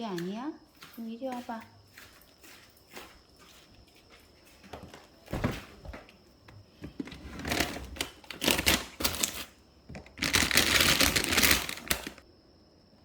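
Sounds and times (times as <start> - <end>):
snack packaging crinkling: 7.1 - 12.2.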